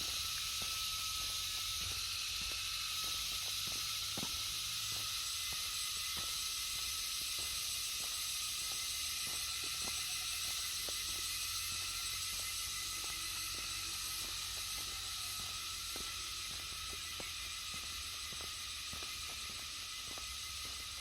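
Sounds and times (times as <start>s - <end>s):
high-pitched insect chorus: 0.0s - 21.0s
soft footsteps on road: 0.0s - 21.0s.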